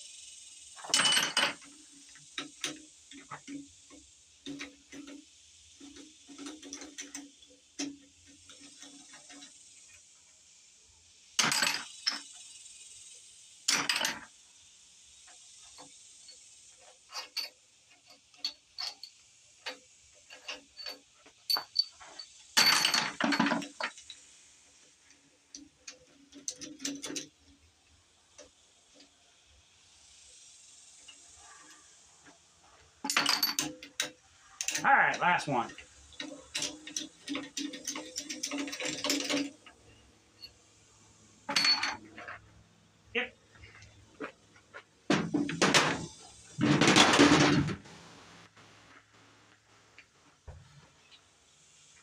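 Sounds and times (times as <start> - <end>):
tools clinking on metal: 0.8 - 5.2, 11.4 - 12.3, 13.7 - 14.3, 17.1 - 24.2, 33.0 - 34.9, 35.6 - 39.8, 41.5 - 42.5.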